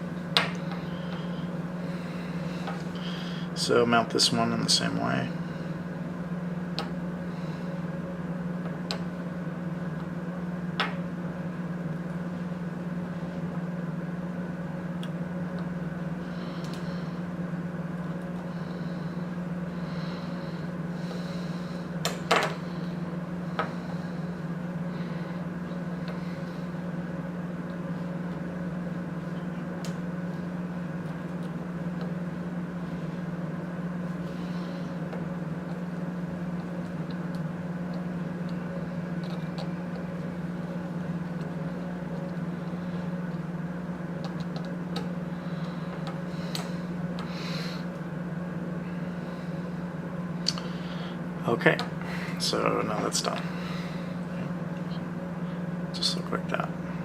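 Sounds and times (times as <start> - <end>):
low electrical hum: 0.0 - 57.0.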